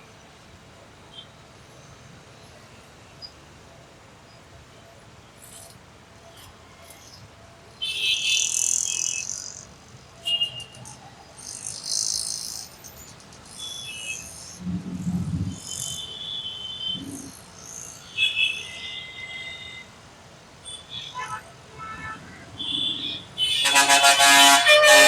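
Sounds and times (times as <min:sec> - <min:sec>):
faint steady background noise: 0:00.0 - 0:25.0
birds chirping: 0:10.8 - 0:18.2.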